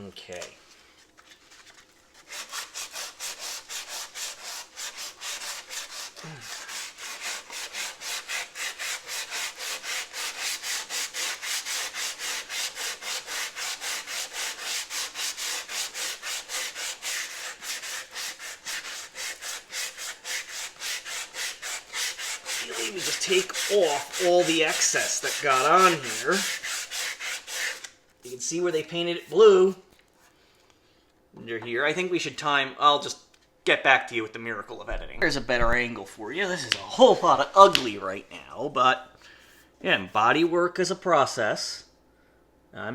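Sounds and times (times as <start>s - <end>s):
sandpaper strokes by hand: 2.1s - 29.4s.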